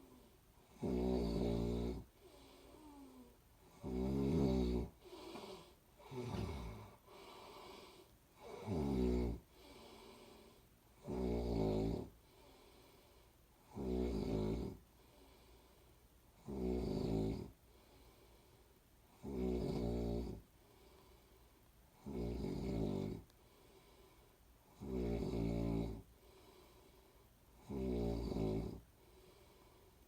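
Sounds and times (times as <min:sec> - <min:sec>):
person snoring: 0:00.0 - 0:12.9, 0:13.6 - 0:14.8, 0:16.4 - 0:17.6, 0:19.1 - 0:20.4, 0:22.0 - 0:23.2, 0:24.7 - 0:26.8, 0:27.6 - 0:29.9
soft breathing: 0:02.0 - 0:03.5, 0:04.8 - 0:08.5, 0:09.4 - 0:10.8, 0:12.1 - 0:13.6, 0:14.8 - 0:16.1, 0:17.6 - 0:18.8, 0:20.4 - 0:21.7, 0:23.2 - 0:24.6, 0:26.0 - 0:27.6, 0:28.8 - 0:30.0.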